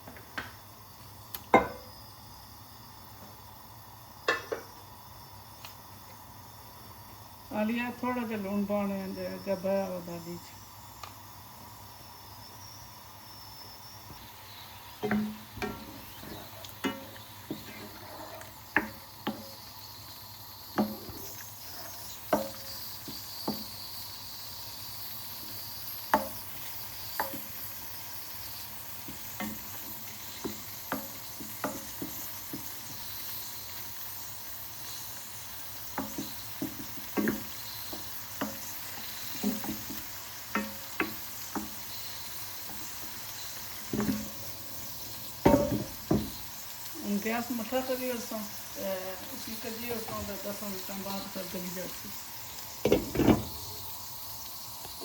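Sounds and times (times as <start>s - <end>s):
faint sizzling: 0.0s - 55.0s
spoon knocking against cooking pot: 15.0s - 17.8s, 22.4s - 22.7s, 45.4s - 46.4s.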